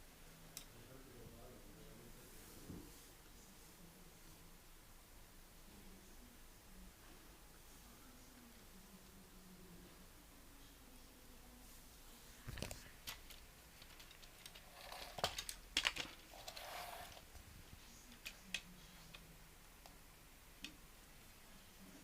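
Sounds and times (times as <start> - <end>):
plastic bricks clicking and rattling: 12.6 - 17.3.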